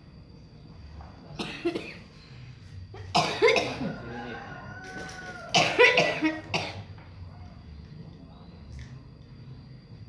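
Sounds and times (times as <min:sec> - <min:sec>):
person coughing: 0:01.4 - 0:02.0, 0:03.1 - 0:03.9, 0:05.6 - 0:06.9.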